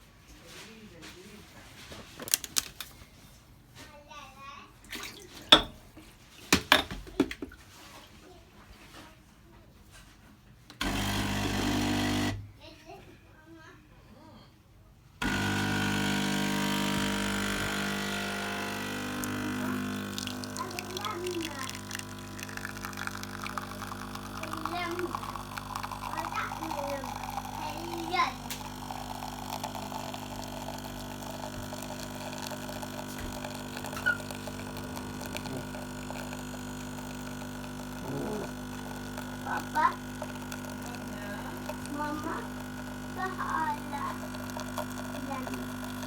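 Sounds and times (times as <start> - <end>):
espresso machine pump humming: 10.8 - 12.4, 15.2 - 46.0.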